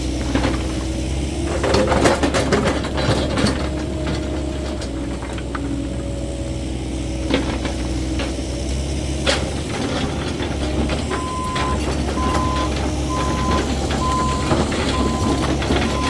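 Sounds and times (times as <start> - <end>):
excavator diesel engine running: 0.0 - 16.0
clanks and knocks: 0.1 - 6.1, 9.1 - 16.0.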